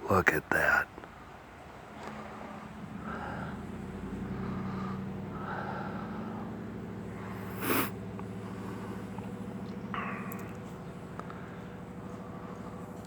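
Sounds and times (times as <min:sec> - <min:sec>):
steady low hum: 0:00.0 - 0:13.0
person sniffing: 0:07.4 - 0:08.0.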